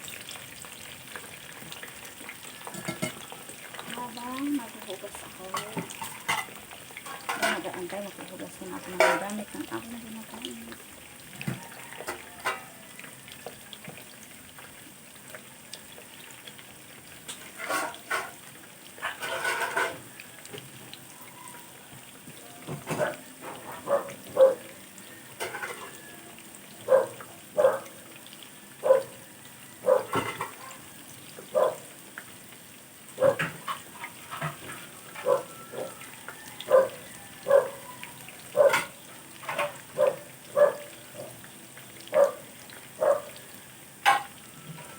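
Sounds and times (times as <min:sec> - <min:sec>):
food sizzling while frying: 0:00.0 - 0:44.9
dog barking: 0:22.9 - 0:24.8, 0:26.8 - 0:28.0, 0:28.8 - 0:29.2, 0:29.8 - 0:30.8, 0:31.5 - 0:31.9, 0:33.2 - 0:33.6, 0:35.2 - 0:36.0, 0:36.6 - 0:38.9, 0:39.6 - 0:41.4, 0:42.1 - 0:43.4.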